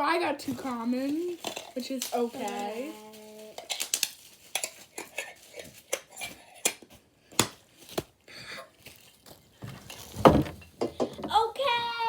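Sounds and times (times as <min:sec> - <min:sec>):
toy packaging crinkling: 0:00.4 - 0:08.0, 0:08.7 - 0:10.2.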